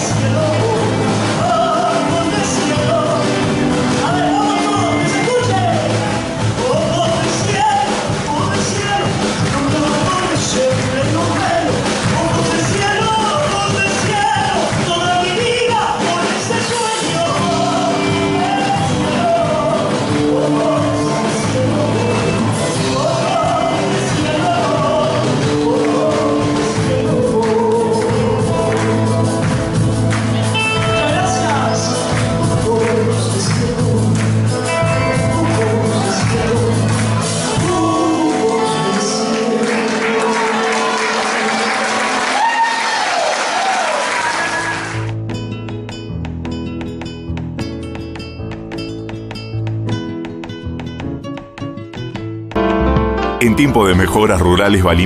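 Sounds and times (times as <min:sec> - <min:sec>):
folk song with singing: 0:00.0 - 0:41.7.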